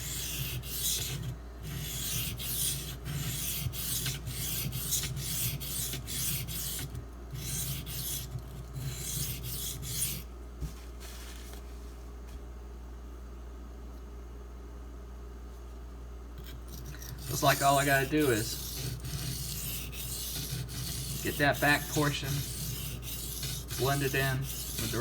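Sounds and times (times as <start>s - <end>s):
knife scraping on whetstone: 0.0s - 10.3s, 16.4s - 25.0s.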